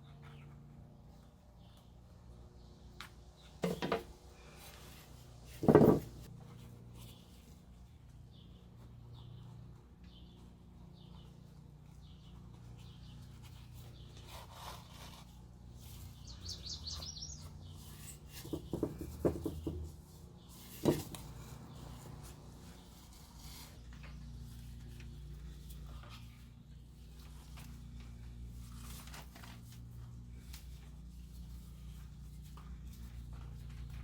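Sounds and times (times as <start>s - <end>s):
soft knocks: 5.6s - 6.3s
faint bird chirps: 15.8s - 18.8s
bird trill: 16.2s - 17.8s.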